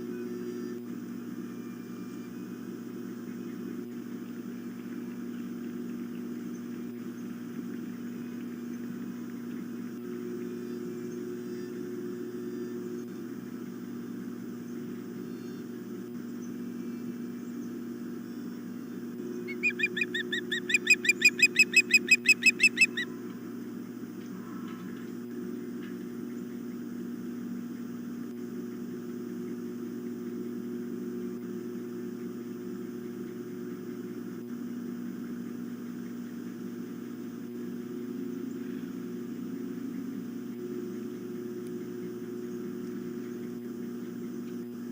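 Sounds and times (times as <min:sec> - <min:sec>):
low electrical hum: 0:00.0 - 0:44.9
bird shrill whistled chirps: 0:19.5 - 0:23.1.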